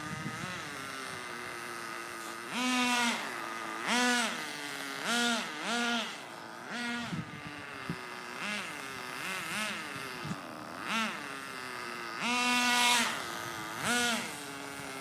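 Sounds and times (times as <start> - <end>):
nitro engine idling and revving: 0.0 - 15.0.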